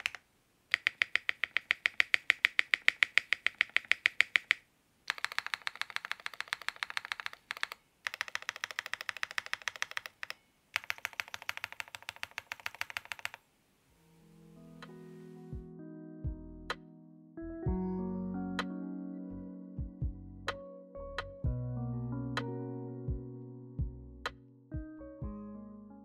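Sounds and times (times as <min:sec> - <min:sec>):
fast typing on mechanical keyboard: 0:00.0 - 0:13.4.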